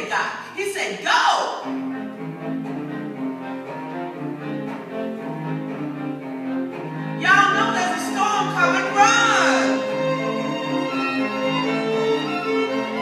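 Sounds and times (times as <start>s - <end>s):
string quartet playing: 1.5s - 13.0s.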